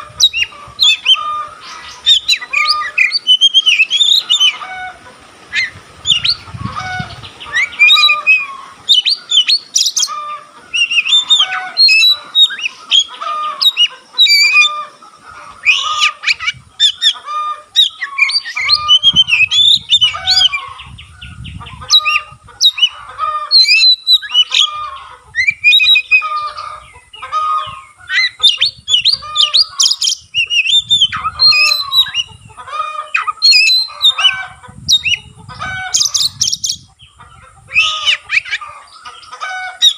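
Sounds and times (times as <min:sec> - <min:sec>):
bird singing whistles and chirps: 0:00.2 - 0:04.6, 0:05.5 - 0:06.4, 0:07.4 - 0:10.1, 0:10.7 - 0:14.8, 0:17.8 - 0:22.9, 0:23.6 - 0:24.7, 0:25.4 - 0:26.6, 0:28.1 - 0:32.3, 0:33.2 - 0:34.3.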